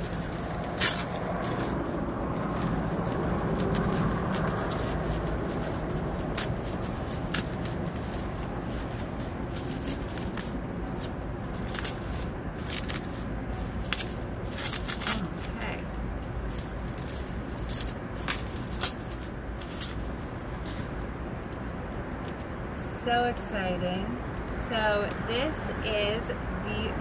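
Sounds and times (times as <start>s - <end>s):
packaging crinkling and scraping: 0.0s - 21.7s
low background rumble: 0.0s - 27.0s.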